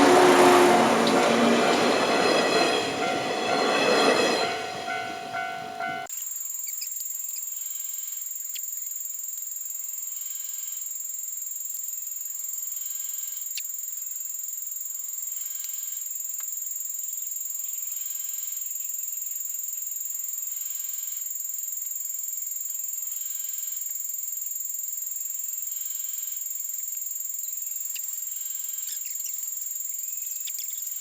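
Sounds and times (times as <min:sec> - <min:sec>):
level crossing warning alarm: 0:00.0 - 0:06.1.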